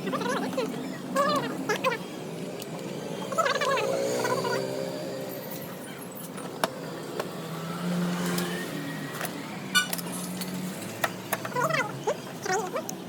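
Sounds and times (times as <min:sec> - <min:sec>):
vehicle engine humming: 0:00.0 - 0:13.0.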